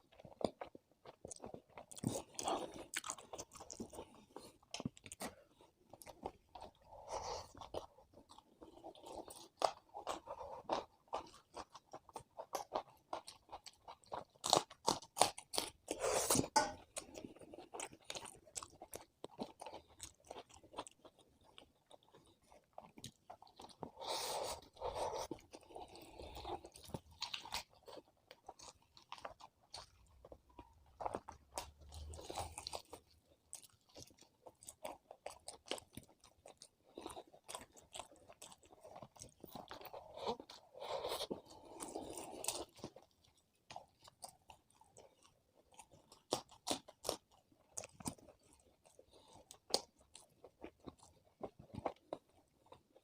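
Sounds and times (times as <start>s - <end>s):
chewing with crisp crunches: 0.0s - 53.0s.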